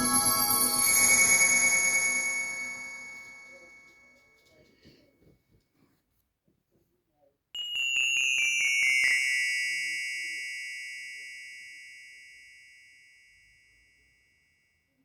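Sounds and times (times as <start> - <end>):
bright high chime: 0.0 - 4.2.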